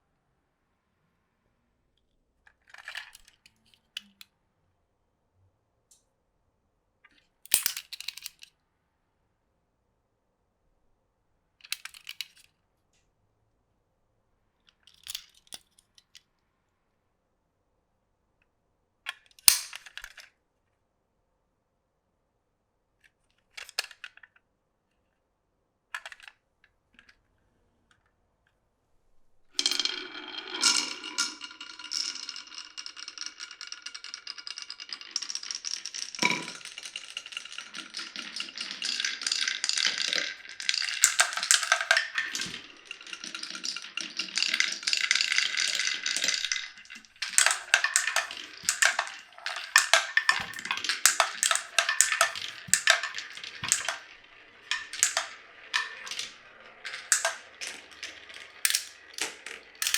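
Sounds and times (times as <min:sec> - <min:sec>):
marbles clacking together: 0:19.5 - 0:19.9, 0:29.6 - 0:59.9
marbles rolling on wooden track: 0:29.6 - 0:59.9.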